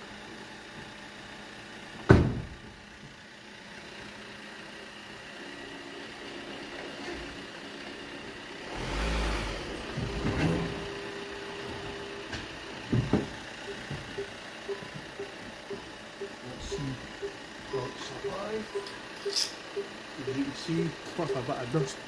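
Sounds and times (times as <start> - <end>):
van engine revving: 8.0 - 22.0.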